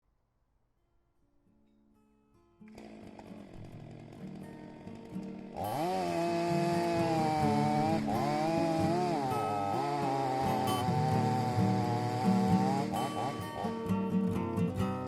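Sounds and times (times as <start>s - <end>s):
chainsaw engine revving: 2.7s - 13.9s.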